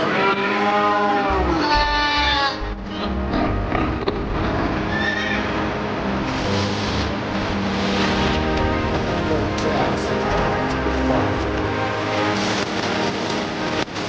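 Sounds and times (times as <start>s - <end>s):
farm animal bleating: 0.0s - 3.9s
music with bass beat: 1.2s - 14.0s.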